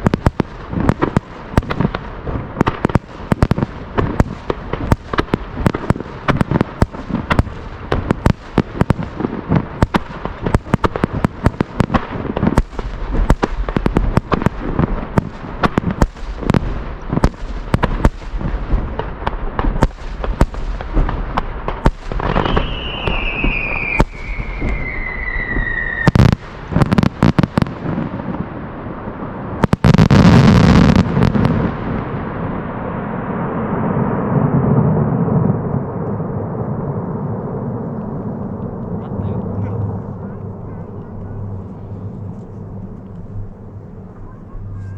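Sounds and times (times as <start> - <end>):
firework shell bursts and crackling: 0.0 - 27.8
loud rumbling firework boom: 0.0 - 44.9
whistling tone sliding down: 22.4 - 26.1.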